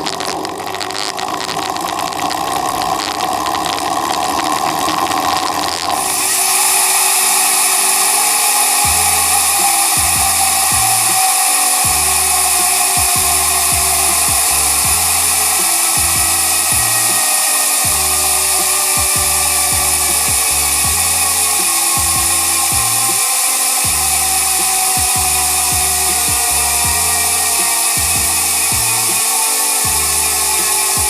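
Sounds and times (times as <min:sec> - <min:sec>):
bicycle hub ratchet whirring: 0:00.0 - 0:31.0
background music with bass line: 0:08.6 - 0:31.0.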